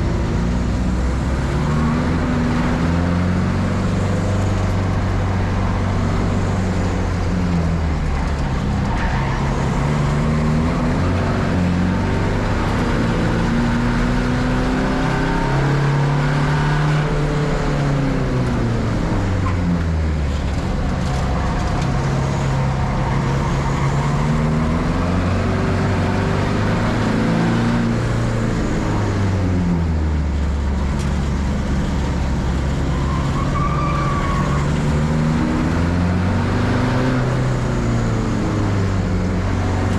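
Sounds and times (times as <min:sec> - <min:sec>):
race car engine revving: 0:00.0 - 0:39.9
tyre squeal: 0:32.7 - 0:35.0.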